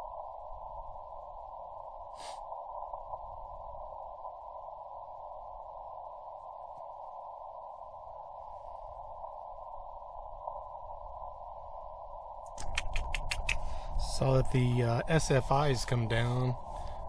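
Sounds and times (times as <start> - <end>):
filtered radio band hiss: 0.0 - 17.0.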